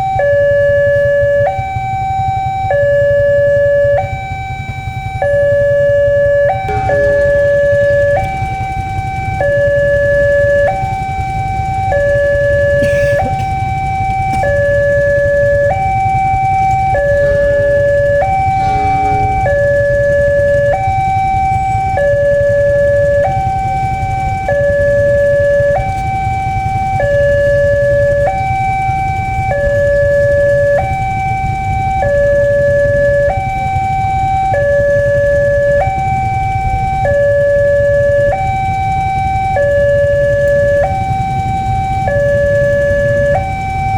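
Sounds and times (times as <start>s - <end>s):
two-tone crossing warning alarm: 0.0s - 43.9s
steady low rumble: 6.7s - 11.2s, 12.2s - 21.9s.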